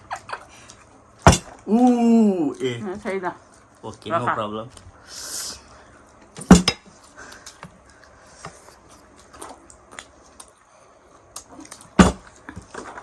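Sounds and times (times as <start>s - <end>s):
dishes and cutlery clattering: 6.4s - 6.8s.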